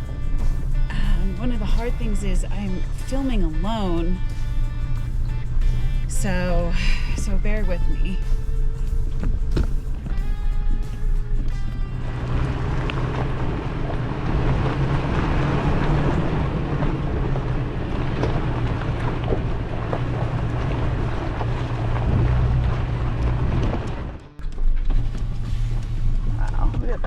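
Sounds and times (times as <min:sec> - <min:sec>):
truck engine running: 0:00.0 - 0:27.0
tyres crunching over rocks: 0:08.4 - 0:25.8.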